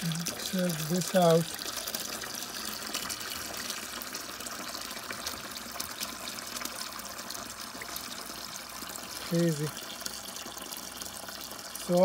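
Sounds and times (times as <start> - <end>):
water trickling from drain line: 0.0 - 12.0.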